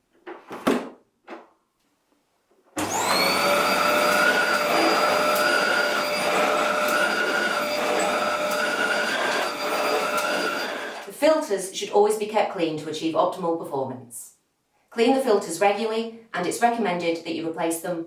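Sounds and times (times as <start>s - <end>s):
vacuum cleaner motor whining: 2.8s - 11.1s.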